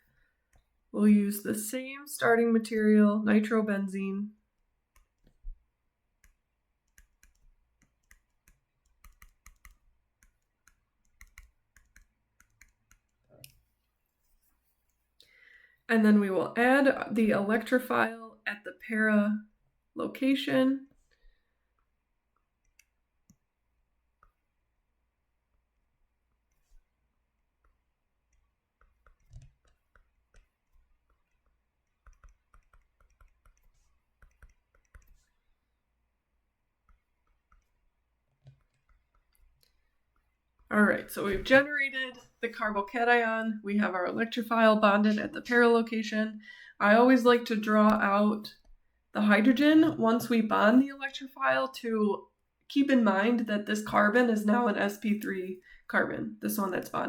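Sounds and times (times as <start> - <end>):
faint irregular computer clicks: 0.0 - 0.8, 4.4 - 15.4, 20.9 - 24.6, 26.3 - 35.6, 36.8 - 40.7.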